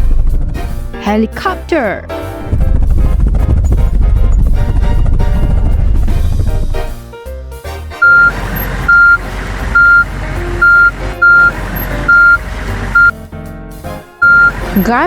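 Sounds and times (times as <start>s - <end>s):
truck engine rumble: 2.4s - 7.0s, 7.9s - 13.3s, 14.2s - 15.0s
truck reversing alarm beeping: 8.0s - 13.2s, 14.2s - 15.0s.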